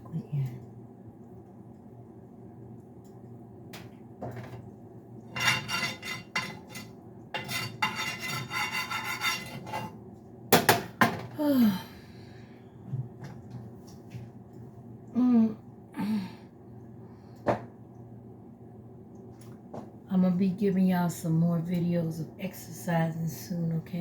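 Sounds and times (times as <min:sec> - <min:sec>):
utensil scraping a pan: 0:05.3 - 0:10.0.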